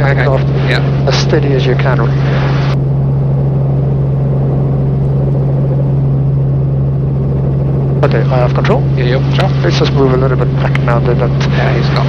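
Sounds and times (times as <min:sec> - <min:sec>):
helicopter rotor and engine drone: 0:00.0 - 0:12.0.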